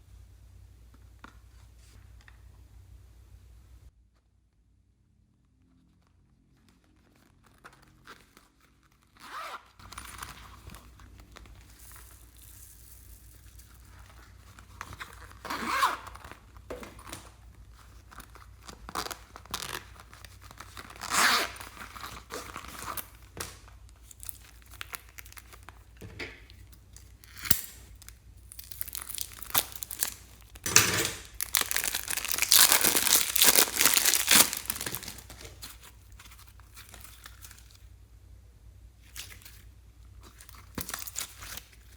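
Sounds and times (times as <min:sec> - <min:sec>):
slime squished by hand crackling: 0:27.4 - 0:30.6, 0:31.3 - 0:35.6.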